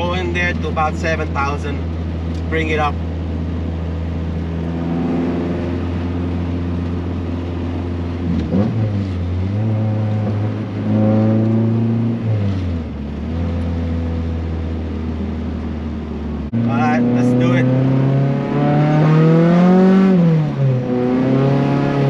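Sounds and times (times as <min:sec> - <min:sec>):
car engine through loud exhaust: 0:00.0 - 0:22.0.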